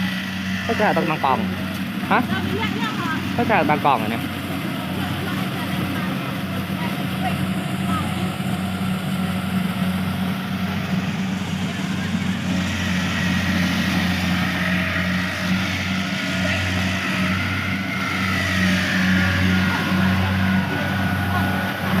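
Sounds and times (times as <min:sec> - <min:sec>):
engine running steadily: 0:00.0 - 0:22.0.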